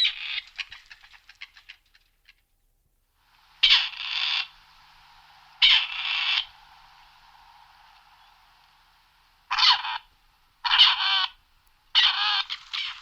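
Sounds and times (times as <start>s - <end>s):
partridge calling: 0.0s - 2.4s, 3.6s - 6.8s, 9.5s - 13.0s.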